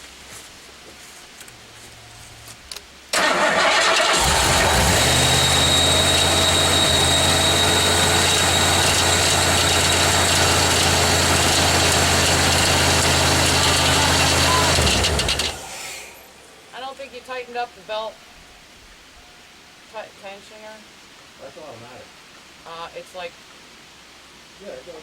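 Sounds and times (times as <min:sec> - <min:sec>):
car engine starting and idling: 0:03.1 - 0:16.9
high steady whine: 0:04.2 - 0:11.5.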